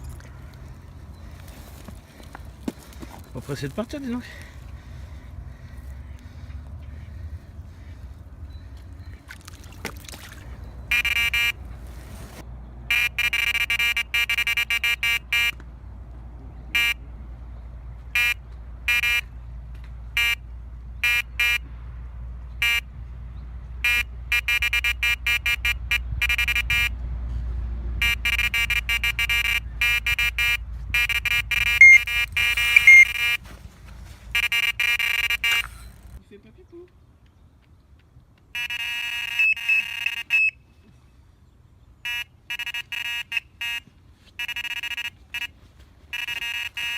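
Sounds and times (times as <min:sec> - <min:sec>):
electronic bite alarm beeping: 0:10.9 - 0:11.6, 0:12.9 - 0:15.5, 0:23.9 - 0:26.9, 0:28.0 - 0:33.4, 0:34.4 - 0:36.1, 0:38.6 - 0:40.6, 0:44.4 - 0:45.5, 0:46.2 - 0:46.9.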